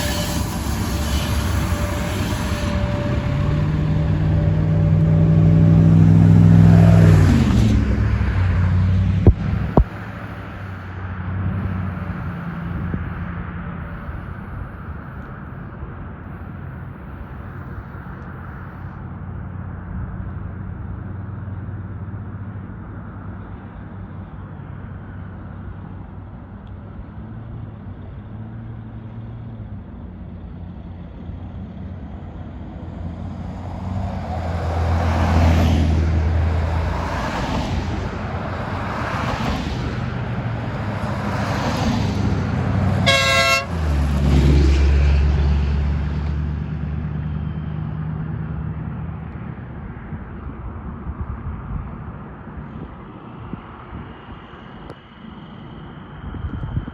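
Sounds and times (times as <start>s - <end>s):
locomotive horn: 0.0s - 8.5s, 40.6s - 45.0s
diesel locomotive humming: 0.0s - 53.1s.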